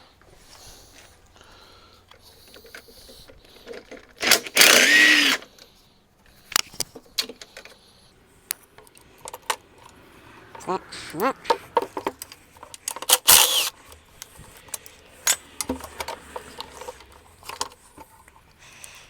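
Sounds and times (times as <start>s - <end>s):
metallic clicks of parts handled: 2.1s - 7.8s, 8.5s - 10.7s, 11.5s - 19.0s
handheld power tool running: 4.2s - 5.5s, 13.0s - 13.8s.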